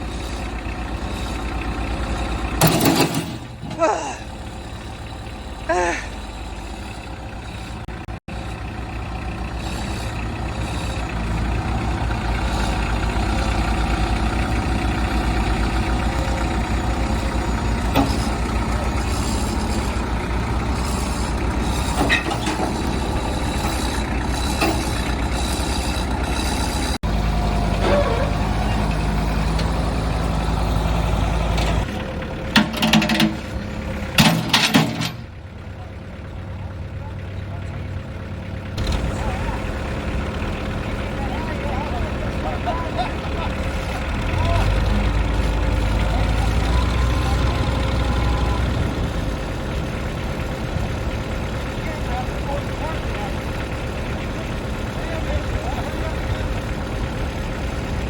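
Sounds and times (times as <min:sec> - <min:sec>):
heavy diesel engine running: 0:00.0 - 0:58.0
metal knocks and clanks: 0:00.1 - 0:05.6, 0:06.3 - 0:27.0, 0:31.0 - 0:35.4.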